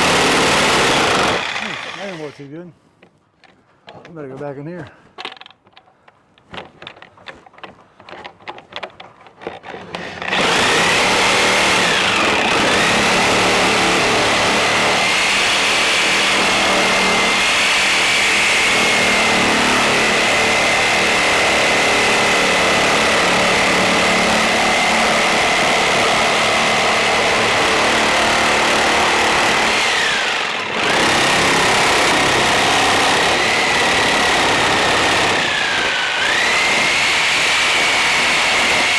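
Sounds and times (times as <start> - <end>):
power saw cutting with whine: 0.0 - 2.4, 10.0 - 38.9
handling knocks and clicks: 3.0 - 10.2.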